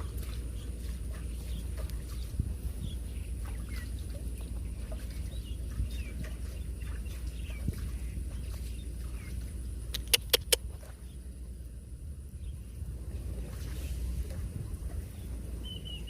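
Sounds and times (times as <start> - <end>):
faint small animal chirps: 9.9 - 10.6
low rumble: 10.6 - 16.0.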